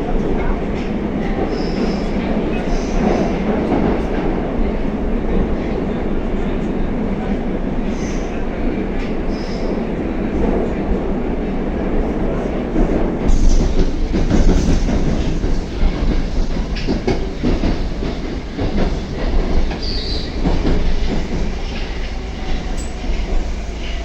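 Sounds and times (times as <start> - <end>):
train rumble: 0.0 - 24.0
rail-joint clacks and knocks: 12.7 - 24.0.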